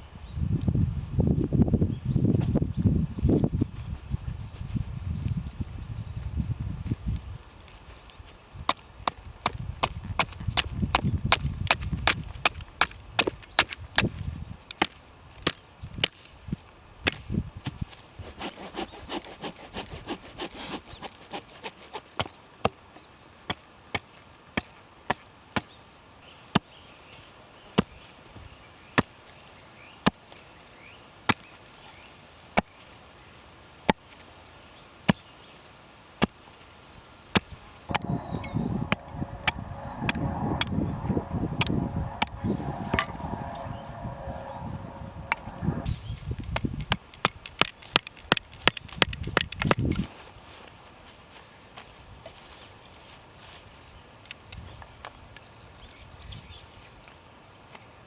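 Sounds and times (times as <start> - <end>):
scraping: 37.9 - 46.2.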